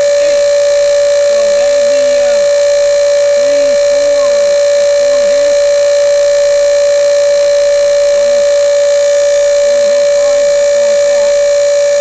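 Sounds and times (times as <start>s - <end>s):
electrical whine: 0.0s - 12.0s.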